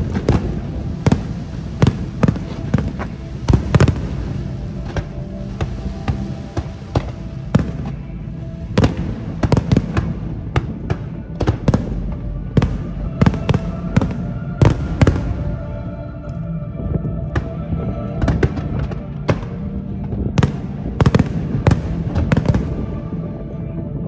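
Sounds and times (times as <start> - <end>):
fireworks bursting: 0.0 - 8.1, 8.7 - 15.7, 20.4 - 23.2
music playing: 0.0 - 24.0.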